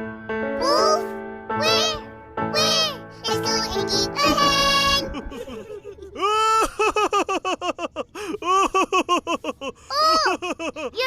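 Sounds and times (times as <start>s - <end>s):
cartoon child laughing: 4.0s - 11.0s.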